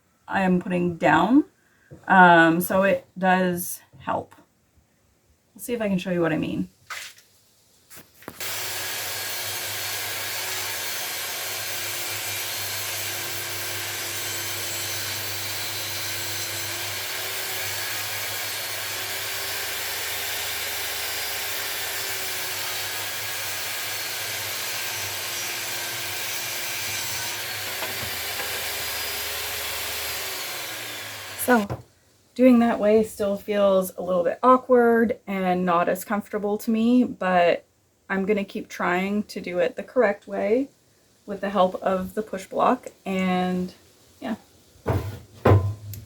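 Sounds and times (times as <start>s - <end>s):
table saw ripping a board: 8.2s - 31.8s.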